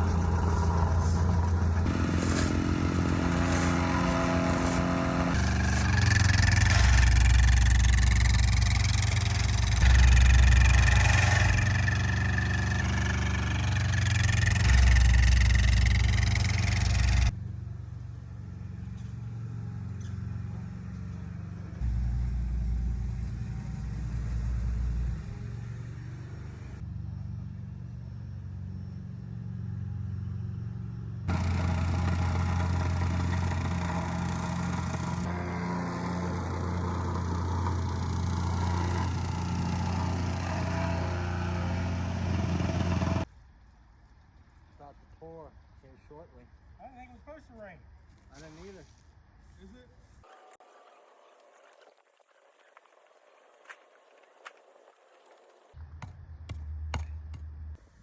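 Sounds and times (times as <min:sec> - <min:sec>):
heavy machinery engines running: 0:00.0 - 0:17.4, 0:31.3 - 0:43.3.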